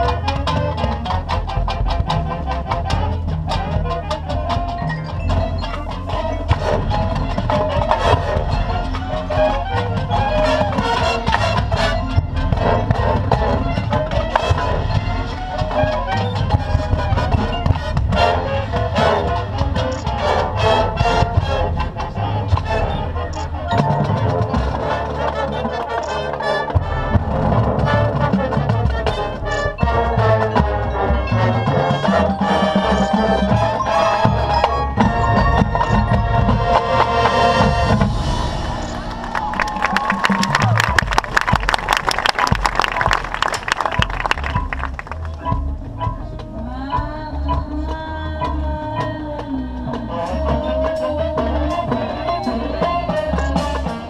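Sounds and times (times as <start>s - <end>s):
brass chords: 0.0s - 54.0s
marching percussion: 0.0s - 54.0s
drum hits: 4.6s - 25.2s, 32.1s - 46.8s.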